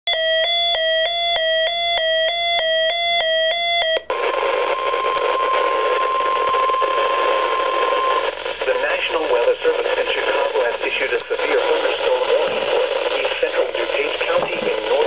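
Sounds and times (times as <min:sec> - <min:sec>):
steady warning alarm tone: 0:00.1 - 0:08.2
radio static: 0:04.1 - 0:15.0.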